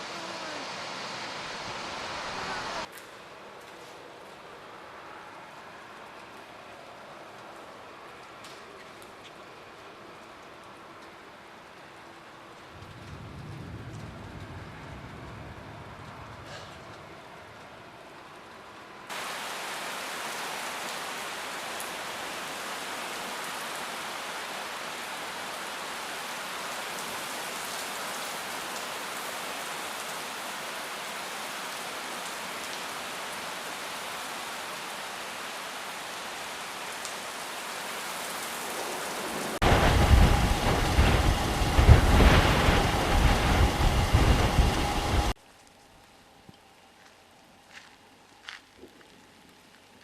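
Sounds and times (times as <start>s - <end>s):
heavy rain hissing: 0.0s - 2.9s, 9.4s - 45.4s
wind-driven rain: 0.0s - 50.0s.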